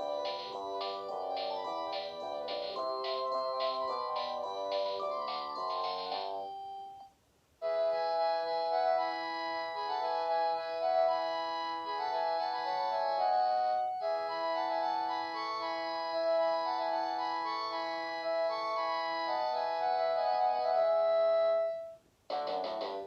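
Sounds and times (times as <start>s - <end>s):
phone ringtone of quick notes: 0.0s - 7.1s
electronic ringtone of held chords: 0.0s - 23.0s.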